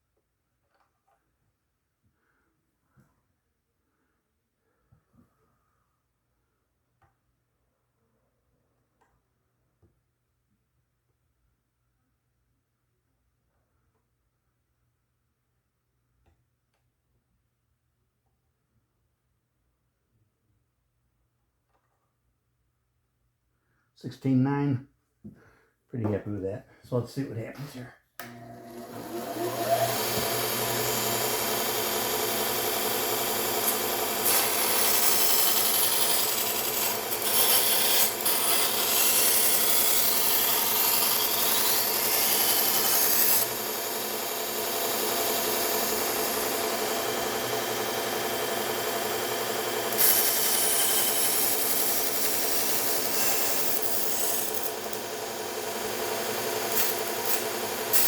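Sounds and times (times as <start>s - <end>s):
belt sander humming: 28.2s - 58.0s.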